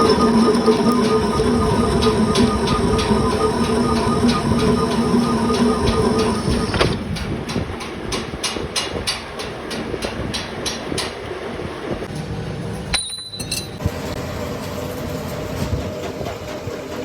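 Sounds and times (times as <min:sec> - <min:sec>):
rhythmic machine ticking: 0:00.0 - 0:07.0
steady machine hum: 0:00.0 - 0:07.1.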